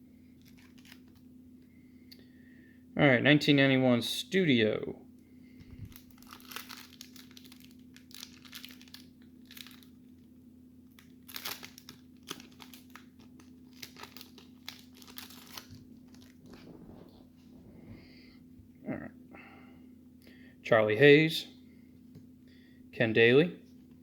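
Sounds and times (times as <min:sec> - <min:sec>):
faint steady hum: 0:00.0 - 0:24.0
plastic wrapper crinkling and tearing: 0:00.4 - 0:01.3, 0:05.8 - 0:16.9.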